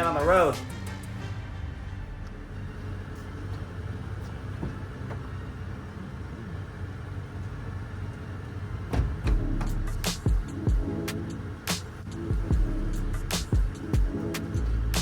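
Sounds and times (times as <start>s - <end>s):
truck engine humming: 0.0s - 15.0s
beat with deep bass and snare: 9.2s - 15.0s.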